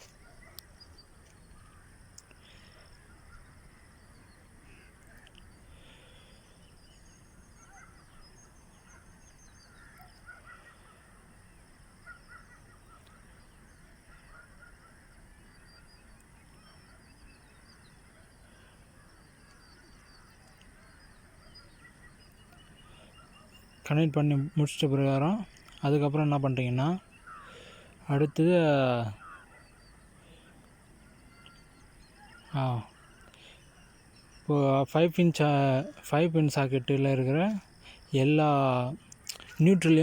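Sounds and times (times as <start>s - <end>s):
faint bird calls: 0.0s - 40.0s
steady low hiss: 15.0s - 40.0s.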